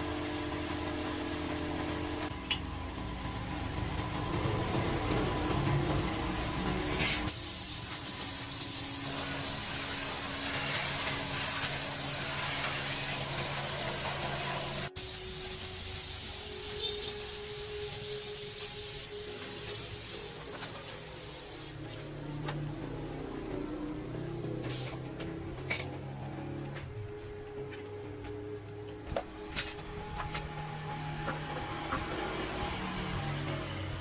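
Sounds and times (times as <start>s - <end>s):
spraying hiss: 7.3s - 21.9s.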